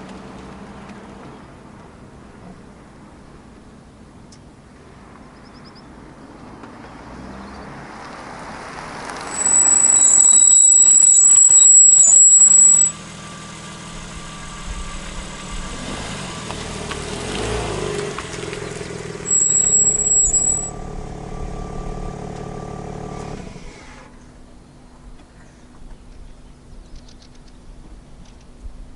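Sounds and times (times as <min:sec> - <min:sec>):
brakes squealing: 0:09.1 - 0:20.8.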